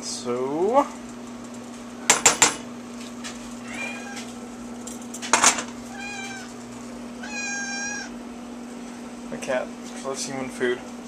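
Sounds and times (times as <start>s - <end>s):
steady low hum: 0.0s - 11.0s
cat meowing: 3.6s - 4.4s, 5.9s - 6.6s, 7.2s - 8.2s.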